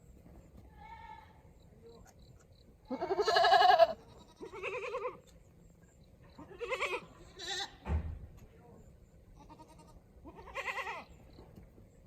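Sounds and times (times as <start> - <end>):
goat bleating: 2.9 - 5.2, 6.4 - 7.8, 9.4 - 11.2.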